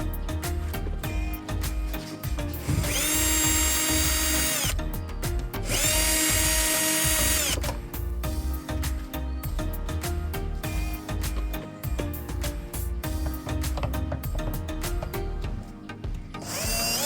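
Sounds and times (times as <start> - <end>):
background music with beat: 0.0 - 17.0
cordless drill motor spinning: 2.6 - 4.8, 5.7 - 7.7, 16.4 - 17.0.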